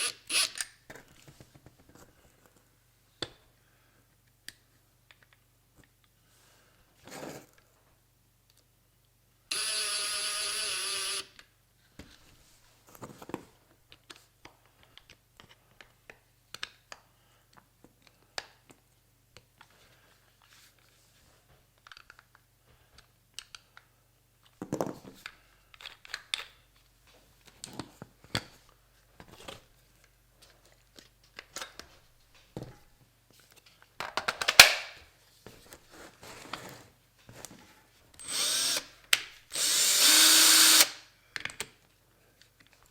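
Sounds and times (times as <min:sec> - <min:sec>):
power drill whirring: 0:09.5 - 0:11.3, 0:38.2 - 0:38.9, 0:39.5 - 0:41.0.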